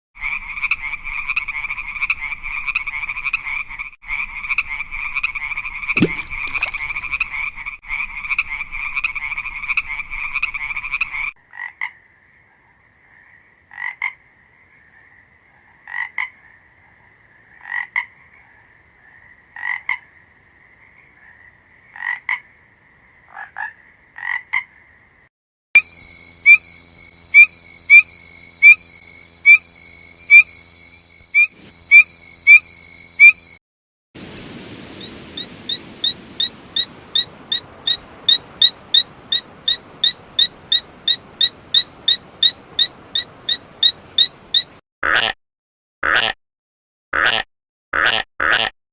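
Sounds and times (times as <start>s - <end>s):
frogs croaking: 0.2s - 25.2s, 25.8s - 33.6s, 35.0s - 45.2s.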